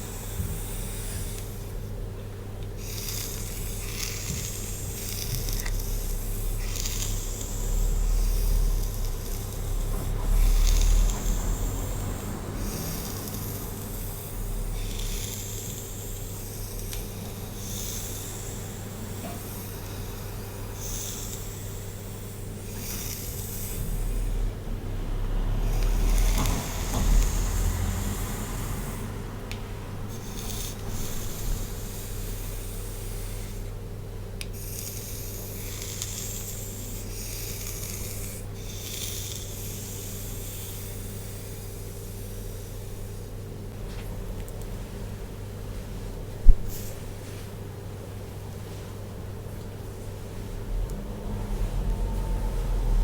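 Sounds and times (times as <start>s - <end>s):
steady low hum: 0.0s - 53.0s.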